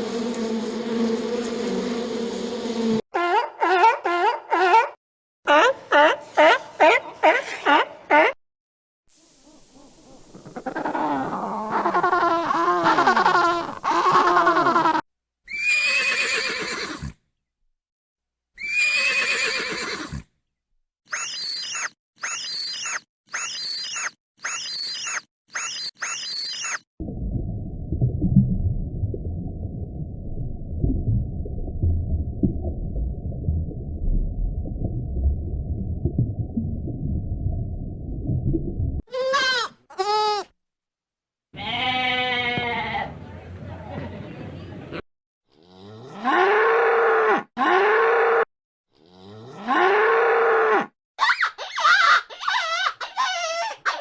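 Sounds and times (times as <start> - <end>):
horse whinnying: 15.5 - 17.2, 18.6 - 20.3
short high chirping calls: 21.1 - 26.8
low muffled rumble: 27.0 - 39.0
goat bleating: 39.1 - 40.5, 41.6 - 43.1.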